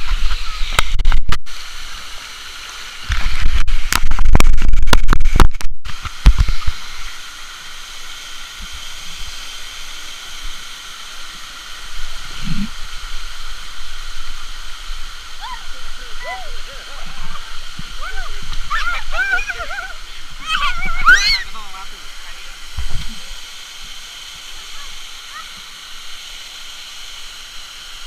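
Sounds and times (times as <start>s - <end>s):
waterfall rushing: 5.9s - 28.0s.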